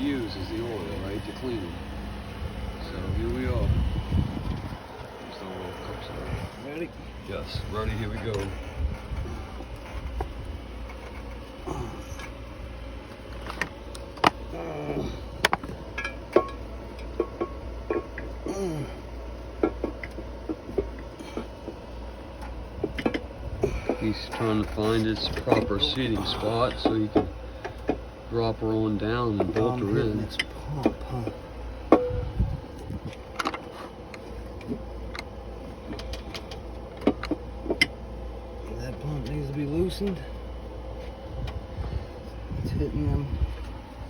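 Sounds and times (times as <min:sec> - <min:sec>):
steady low hum: 0:00.0 - 0:44.0
metal clinks and knocks: 0:15.4 - 0:18.4, 0:29.4 - 0:32.4
grunt-like vocal sound: 0:18.5 - 0:19.0.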